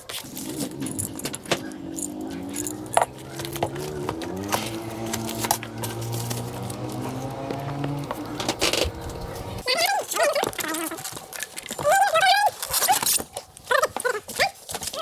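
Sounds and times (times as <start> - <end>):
metallic clinks and rattles: 0.0 - 13.7
engine running with wavering pitch: 0.6 - 9.6.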